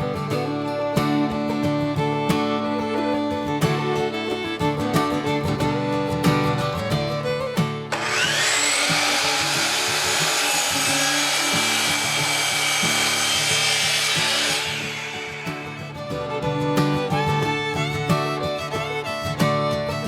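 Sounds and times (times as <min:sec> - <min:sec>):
bluegrass background music: 0:00.0 - 0:08.0, 0:15.6 - 0:20.0
power saw cutting wood: 0:07.9 - 0:20.0.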